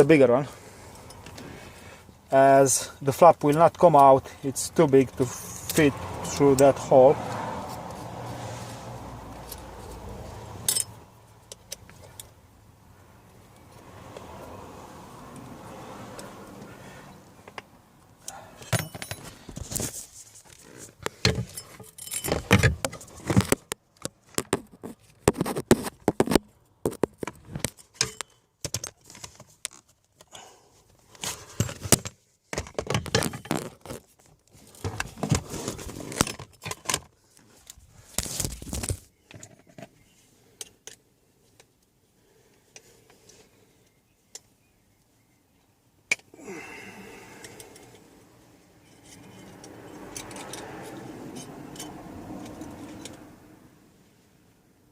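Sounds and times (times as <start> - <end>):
hard plastic clicking and scraping: 22.4 - 30.3.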